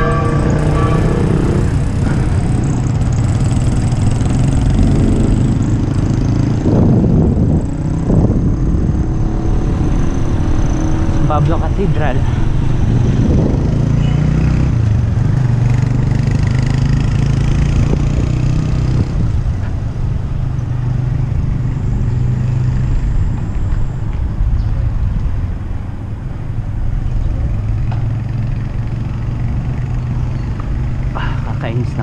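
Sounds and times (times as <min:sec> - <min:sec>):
low rumble: 0:00.0 - 0:14.0
road traffic: 0:00.0 - 0:32.0.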